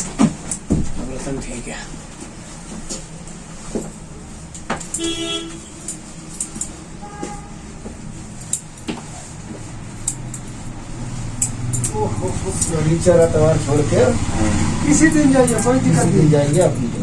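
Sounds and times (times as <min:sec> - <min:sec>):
street traffic: 0:00.0 - 0:17.0
vehicle horn honking: 0:04.9 - 0:06.0, 0:07.0 - 0:07.7
sharp clicks: 0:10.0 - 0:10.5, 0:11.4 - 0:12.8.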